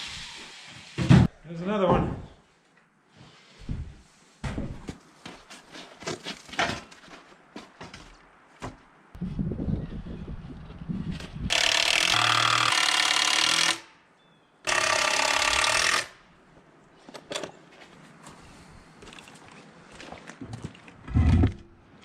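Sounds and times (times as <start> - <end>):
handheld power tool running: 14.7 - 16.2.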